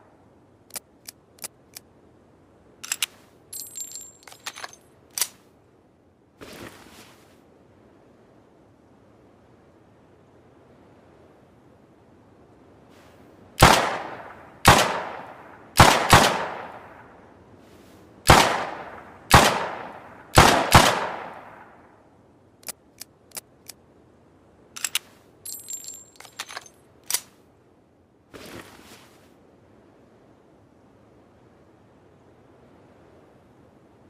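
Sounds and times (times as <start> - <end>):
light clicks: 0.7 - 1.9, 2.8 - 5.4, 22.6 - 23.8, 24.8 - 27.4
short metallic rattle: 2.8 - 5.4, 24.8 - 27.3
gunshot bangs with echo: 18.3 - 21.6.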